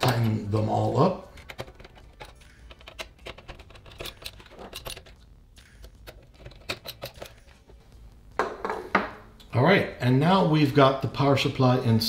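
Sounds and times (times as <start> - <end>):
handling noise: 1.3 - 9.2.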